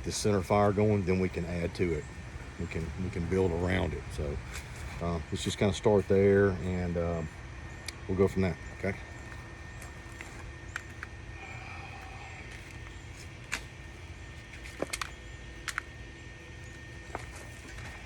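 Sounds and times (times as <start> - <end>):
low background rumble: 0.0 - 18.0.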